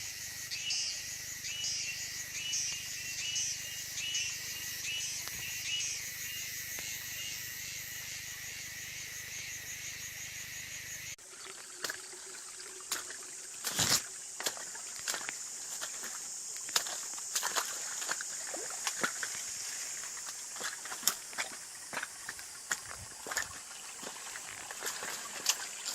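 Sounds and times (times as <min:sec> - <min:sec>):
high insect drone: 0:00.0 - 0:11.2, 0:11.8 - 0:25.9.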